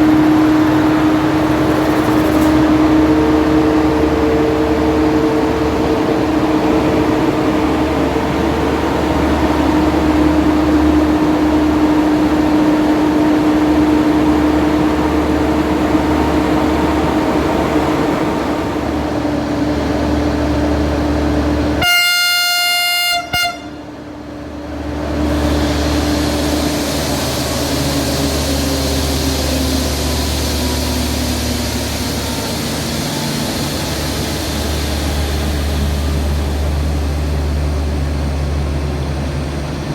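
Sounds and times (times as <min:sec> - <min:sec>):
diesel locomotive engine hum: 0:00.0 - 0:39.9
locomotive horn: 0:21.8 - 0:24.1.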